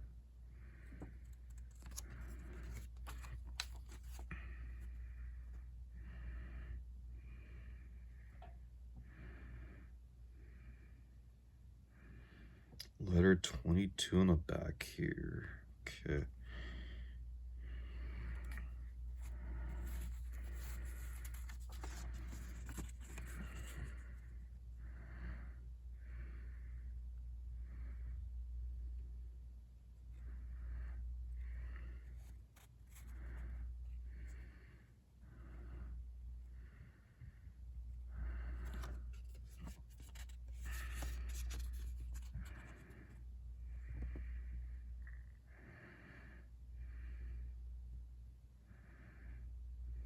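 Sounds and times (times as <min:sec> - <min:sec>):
steady low hum: 0:00.0 - 0:50.0
paper banknotes rustling: 0:01.3 - 0:04.5, 0:19.2 - 0:24.0, 0:38.6 - 0:42.8.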